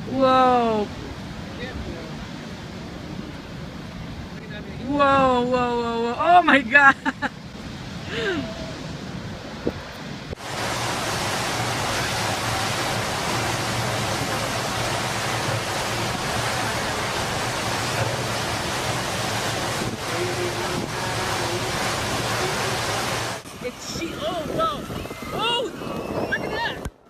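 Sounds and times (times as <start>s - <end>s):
storm wind: 0.0s - 27.0s
churning water: 10.2s - 26.9s.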